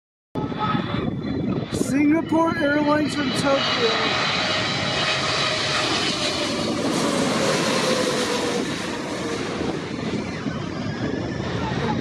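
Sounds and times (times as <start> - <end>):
jet airliner passing overhead: 0.4 - 12.0.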